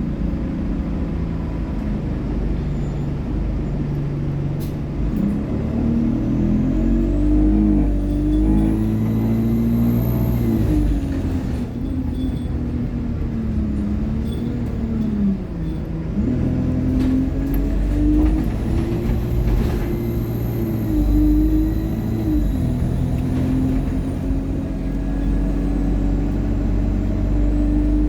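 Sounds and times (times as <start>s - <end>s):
bus gearbox whining: 15.9s - 25.6s
high turbo whistle: 19.6s - 23.8s.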